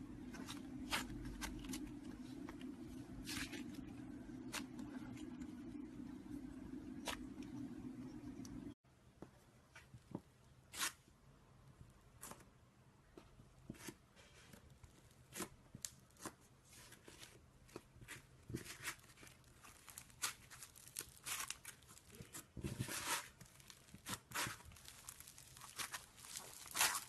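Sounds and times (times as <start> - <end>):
slime crackling and popping: 19.2 - 22.4, 23.0 - 27.0.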